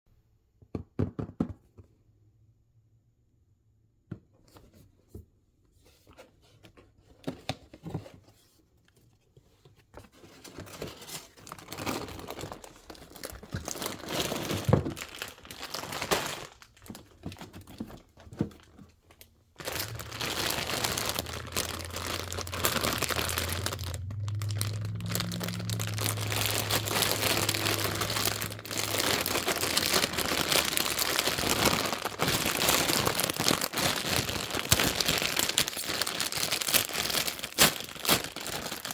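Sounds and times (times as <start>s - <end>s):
packaging crinkling and tearing: 10.4s - 38.9s.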